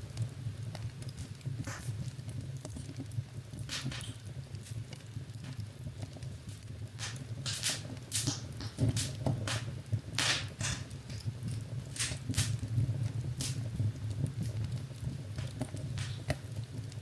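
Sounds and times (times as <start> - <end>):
fire crackling: 0.0 - 17.0
sharp pops: 7.0 - 11.3, 12.0 - 12.6.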